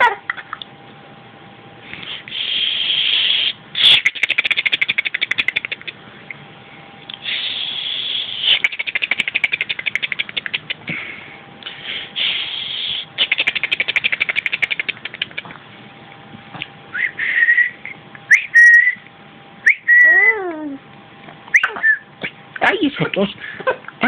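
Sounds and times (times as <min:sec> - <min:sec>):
child hissing breath: 0:10.9 - 0:13.1.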